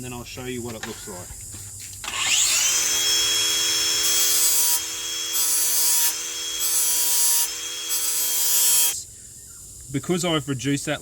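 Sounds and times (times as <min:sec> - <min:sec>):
angle grinder grinding metal: 0:02.0 - 0:09.0.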